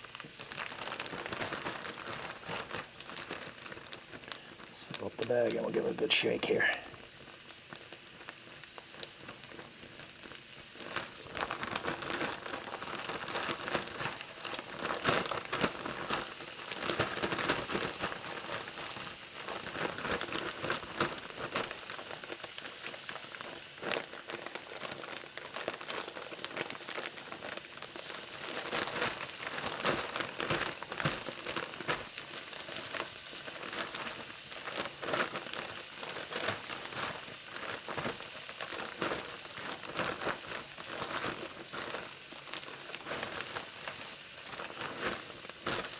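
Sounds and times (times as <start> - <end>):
plastic bag crinkling and rustling: 0.0 - 45.9.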